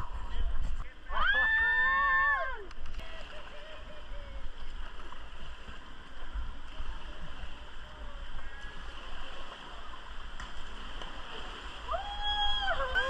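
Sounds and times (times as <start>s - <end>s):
low rumble on microphone: 0.0s - 13.0s
river water rushing: 2.9s - 13.0s.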